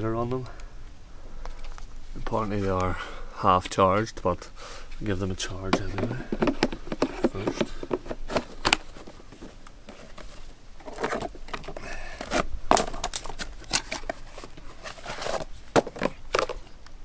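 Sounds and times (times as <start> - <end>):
plastic packaging scraping and rustling: 4.9 - 16.9.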